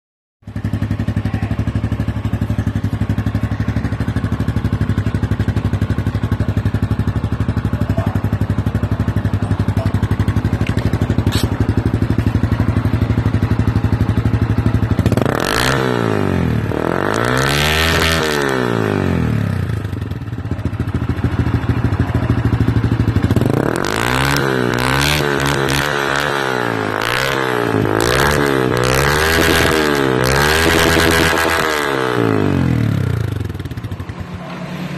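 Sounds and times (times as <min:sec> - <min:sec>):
motorcycle engine idling: 0:00.4 - 0:15.4, 0:18.9 - 0:24.3, 0:32.2 - 0:34.9
motorcycle engine revving: 0:00.4 - 0:34.9.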